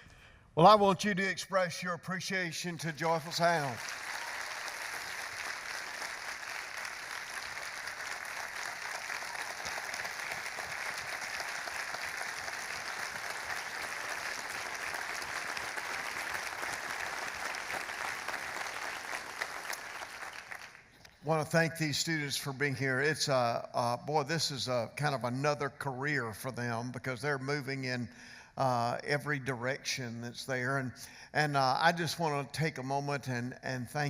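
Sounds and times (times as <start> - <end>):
congregation applauding: 2.8 - 21.0.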